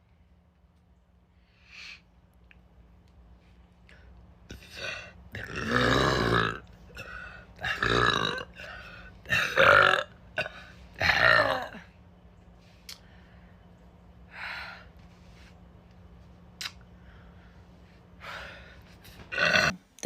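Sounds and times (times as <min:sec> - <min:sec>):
woman belching loudly: 0:05.4 - 0:06.7, 0:07.6 - 0:08.6, 0:09.3 - 0:11.8, 0:19.3 - 0:19.8.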